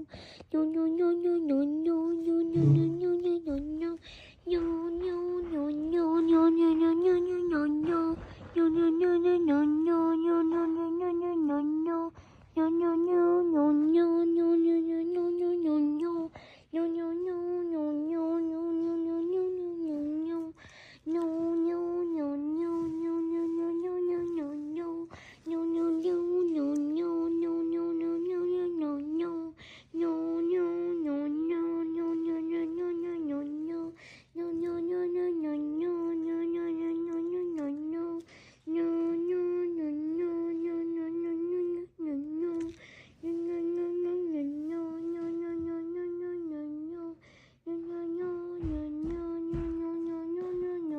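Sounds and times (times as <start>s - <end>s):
person humming a droning note: 2.3s - 3.8s.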